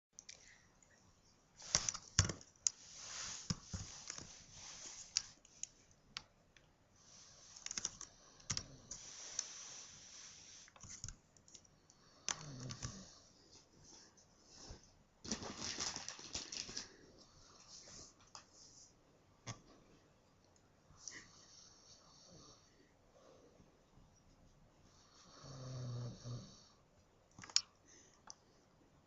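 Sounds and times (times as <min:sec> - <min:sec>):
rustling and clicks of handling: 0:01.6 - 0:06.7.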